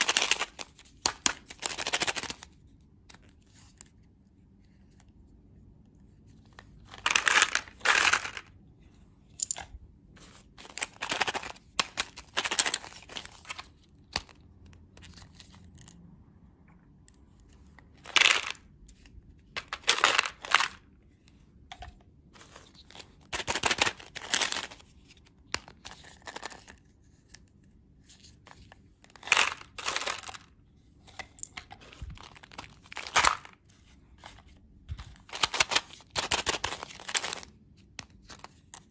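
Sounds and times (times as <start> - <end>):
candy wrappers tearing and crinkling: 22.4 - 24.9, 29.1 - 30.6, 31.7 - 33.6, 35.2 - 37.5.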